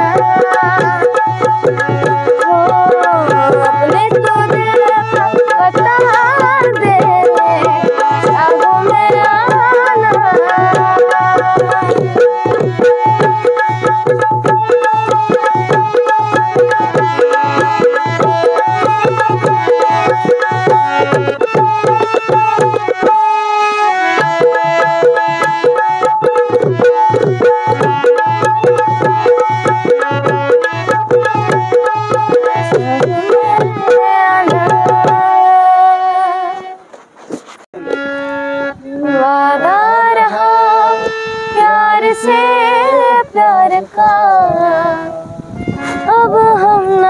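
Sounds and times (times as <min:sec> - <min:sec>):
woman singing: 0:00.0 - 0:22.8, 0:30.2 - 0:36.8, 0:38.8 - 0:47.0
melodic instrumental accompaniment: 0:00.0 - 0:34.2
dholki drum rhythm: 0:00.0 - 0:35.6.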